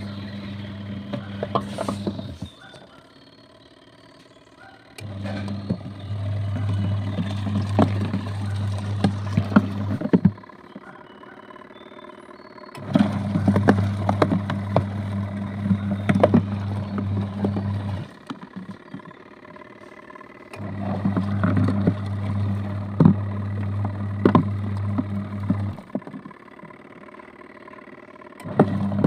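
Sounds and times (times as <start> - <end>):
washing machine motor humming: 0.0 - 29.0
water and laundry sloshing: 5.1 - 10.3, 12.8 - 18.1.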